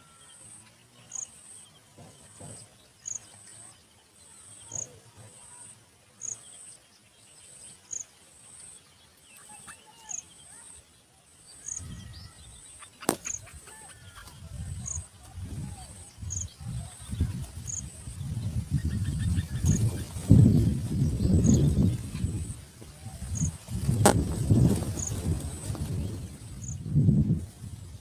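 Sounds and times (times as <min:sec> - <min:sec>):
insects chirping: 0:11.3 - 0:12.0, 0:23.2 - 0:26.9.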